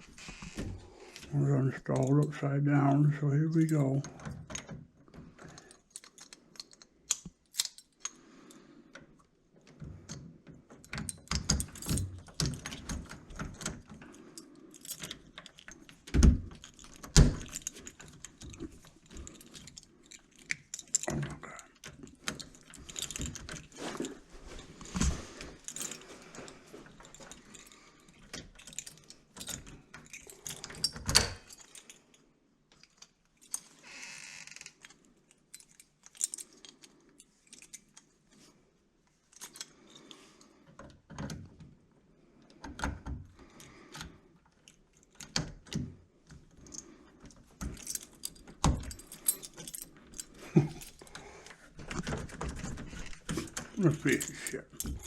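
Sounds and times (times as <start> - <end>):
metal lock parts clicking: 3.6 - 8.2, 9.0 - 24.2, 25.4 - 33.8, 34.5 - 38.1, 39.3 - 40.1, 43.9 - 55.0
keys jangling: 10.8 - 24.6, 25.4 - 32.2, 47.6 - 55.0.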